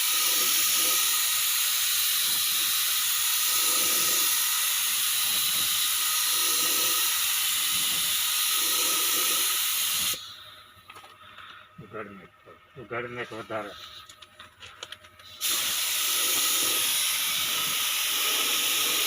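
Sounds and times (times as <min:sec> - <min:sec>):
paint spray gun hissing: 0:00.0 - 0:10.3, 0:15.3 - 0:19.0.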